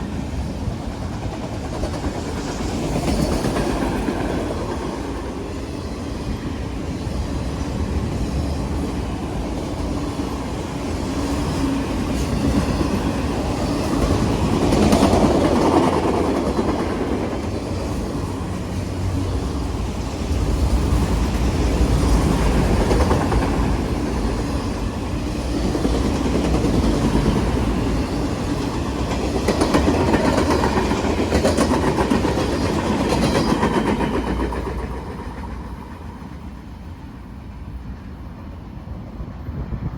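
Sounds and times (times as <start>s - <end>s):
train rumble: 0.0s - 39.9s
train wheels clicking over rail joints: 10.9s - 36.6s.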